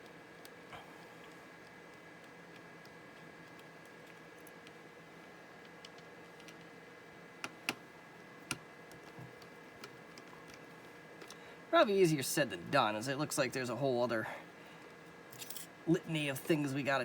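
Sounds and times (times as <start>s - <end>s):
faint steady whine: 0.0s - 17.0s
ticks and clicks of laptop parts: 1.2s - 6.8s, 7.4s - 11.4s.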